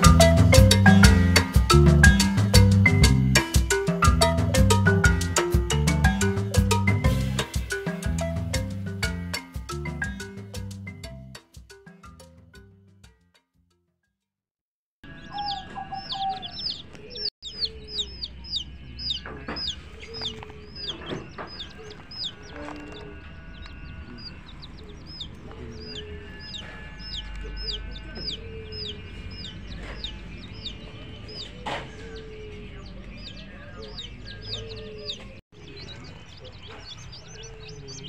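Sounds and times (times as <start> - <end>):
chicks peeping: 15.0 - 38.0
hen clucking: 15.2 - 38.0.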